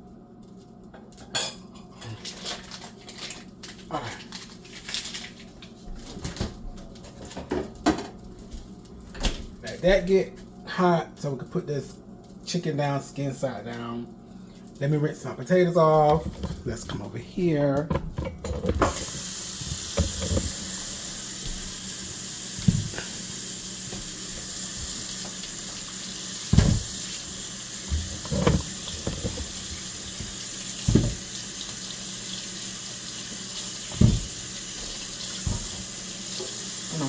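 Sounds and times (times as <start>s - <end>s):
faucet running into a sink: 18.8s - 37.0s
potatoes knocking: 26.5s - 27.1s, 27.9s - 31.3s.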